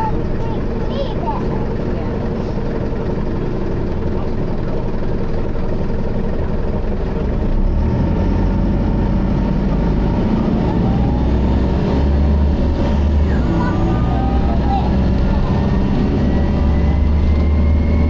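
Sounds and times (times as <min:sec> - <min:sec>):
bus engine running: 0:00.0 - 0:18.0.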